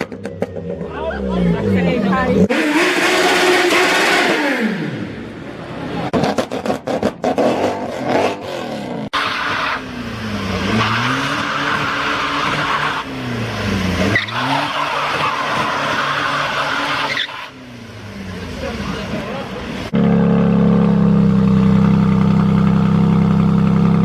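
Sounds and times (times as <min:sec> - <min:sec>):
car exhaust popping and crackling: 0:00.0 - 0:01.0, 0:19.9 - 0:24.0
car engine revving: 0:00.0 - 0:24.0
tyre squeal: 0:14.0 - 0:17.6.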